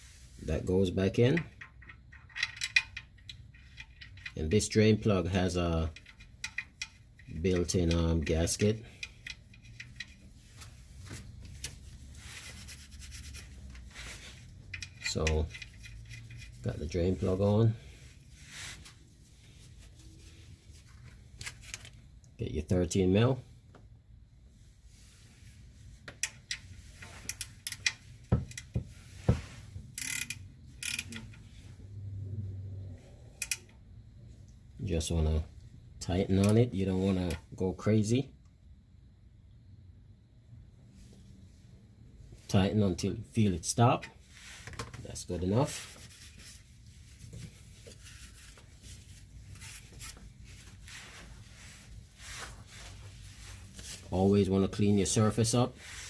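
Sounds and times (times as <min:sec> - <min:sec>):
ratchet wrench clicking: 0:05.9 - 0:10.2, 0:14.7 - 0:16.6, 0:26.2 - 0:28.7, 0:29.9 - 0:31.5, 0:33.4 - 0:33.8
faint scuffing and rustling: 0:10.3 - 0:14.5, 0:16.6 - 0:21.7, 0:45.6 - 0:54.3, 0:55.7 - 0:56.0.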